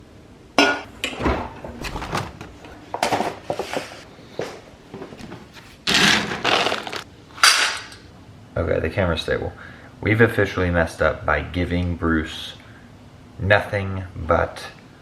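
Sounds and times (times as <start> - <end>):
objects knocking and clattering: 0.6 - 8.0.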